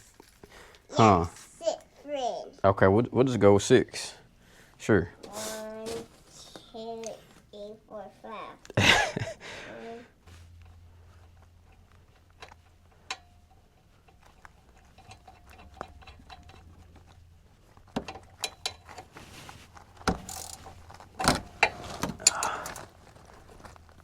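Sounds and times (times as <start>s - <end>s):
hand tools and metal parts clanking: 10.4s - 24.0s.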